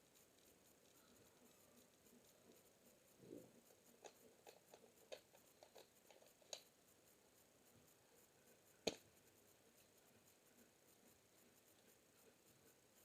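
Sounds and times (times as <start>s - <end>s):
faint light clicks and taps: 0.0s - 6.8s, 7.4s - 13.0s
sharp click: 8.8s - 9.1s.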